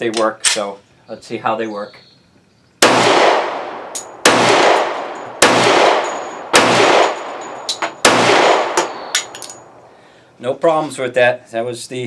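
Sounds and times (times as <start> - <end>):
pistol shots ringing out: 2.8 - 9.8
light metallic clinks: 7.1 - 9.8.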